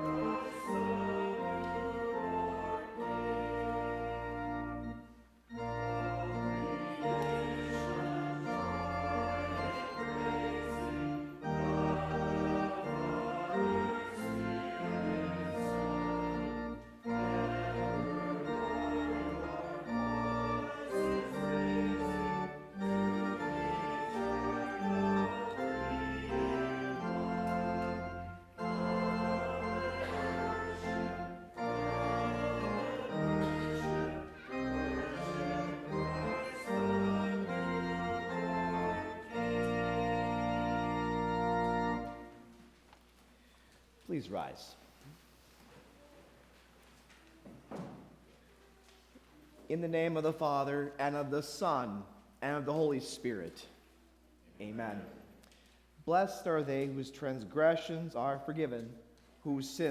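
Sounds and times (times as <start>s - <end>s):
church organ playing a hymn: 0.0s - 42.8s.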